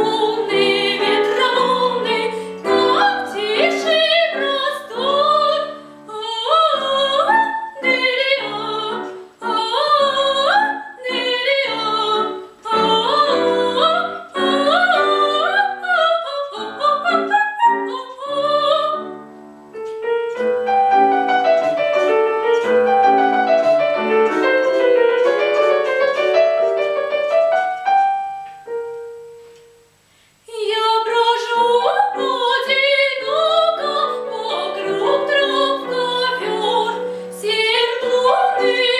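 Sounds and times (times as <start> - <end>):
girl singing: 0.0 - 19.3, 30.5 - 38.9
piano accompaniment: 0.0 - 38.9.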